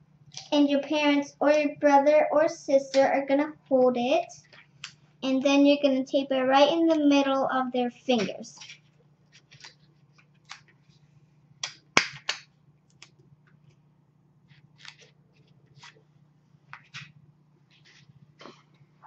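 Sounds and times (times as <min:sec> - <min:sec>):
faint steady hum: 0:00.0 - 0:19.0
tape crackling on paper: 0:08.2 - 0:11.0, 0:14.4 - 0:18.8.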